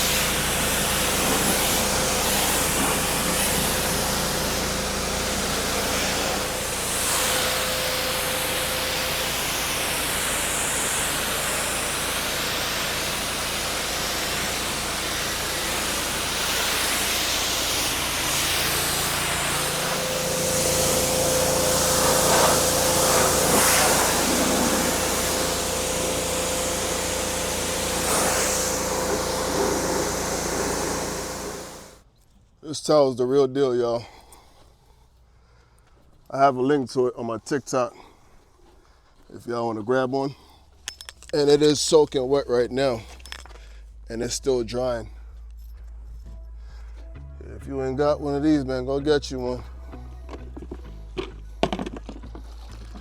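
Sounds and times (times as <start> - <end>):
pressure washer engine droning: 0.0 - 32.0, 46.6 - 53.0
water spray hissing: 0.0 - 32.0.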